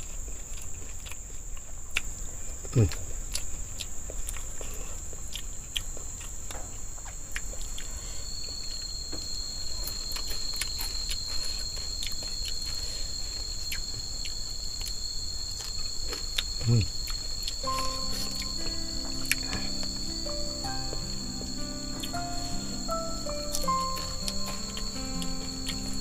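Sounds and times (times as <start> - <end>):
insects buzzing: 3.2 - 26.0
high-pitched insect tone: 7.7 - 26.0.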